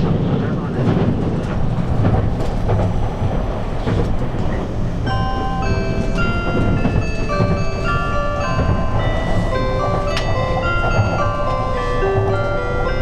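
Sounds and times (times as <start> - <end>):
electric train rumble inside carriage: 0.0 - 13.0
chime melody over speakers: 5.1 - 13.0.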